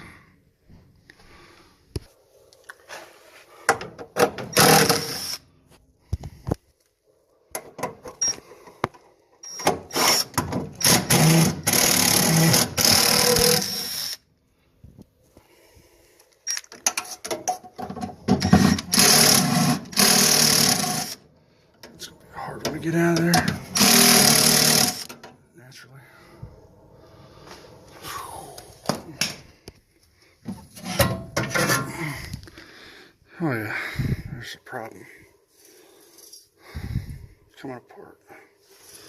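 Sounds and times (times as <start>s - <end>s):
cordless drill running: 4.5s - 5.4s, 9.9s - 14.2s, 18.4s - 21.2s, 23.7s - 25.1s.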